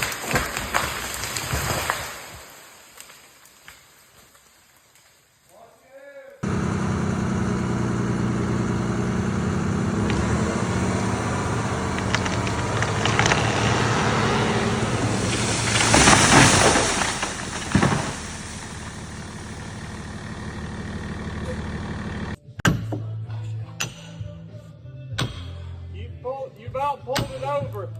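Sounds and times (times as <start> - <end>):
tree crashing through branches: 0.0 - 5.2, 6.5 - 22.4
wood cracking: 0.0 - 5.2, 6.4 - 22.4
engine running: 6.4 - 22.4
heavy thud of tree landing: 11.8 - 20.0.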